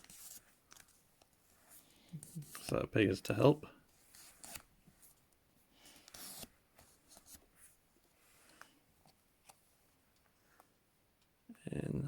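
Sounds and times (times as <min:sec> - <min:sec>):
paper note rustling and crinkling: 0:00.0 - 0:02.8, 0:03.8 - 0:05.3, 0:05.9 - 0:07.8.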